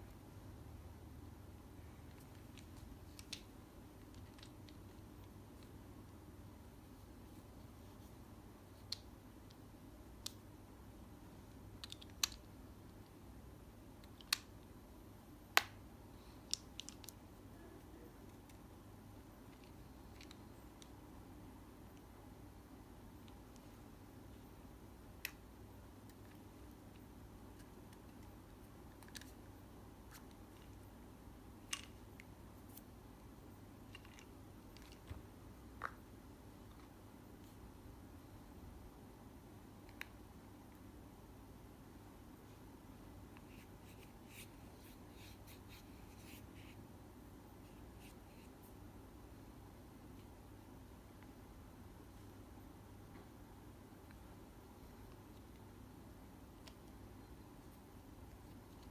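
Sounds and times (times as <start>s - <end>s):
faint low hum: 0.0s - 58.9s
small sharp clicks and taps: 2.0s - 5.7s, 8.8s - 9.6s, 11.8s - 13.2s, 14.0s - 14.6s, 39.8s - 40.8s.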